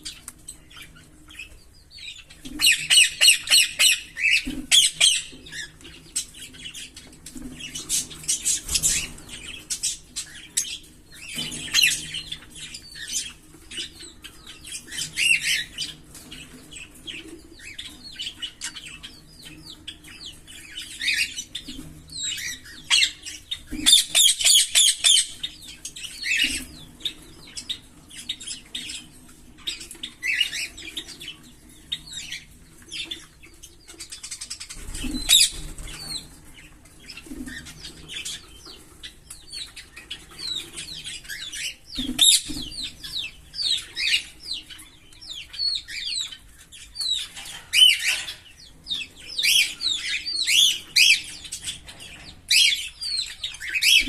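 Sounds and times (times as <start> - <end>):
lovebirds chirping and chattering: 0.0 - 54.0.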